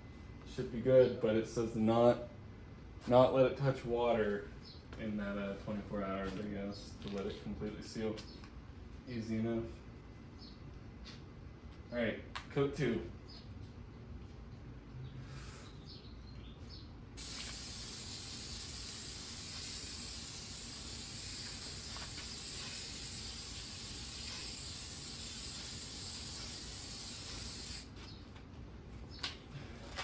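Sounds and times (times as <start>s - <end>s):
aerosol can spraying hiss: 17.2s - 27.9s.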